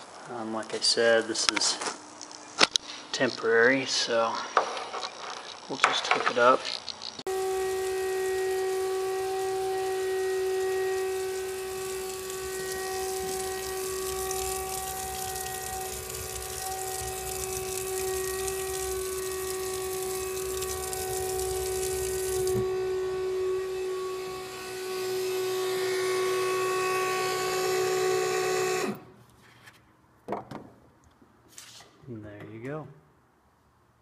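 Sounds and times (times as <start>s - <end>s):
pump whining: 2.3s - 29.1s
water rushing into sink: 7.3s - 23.7s.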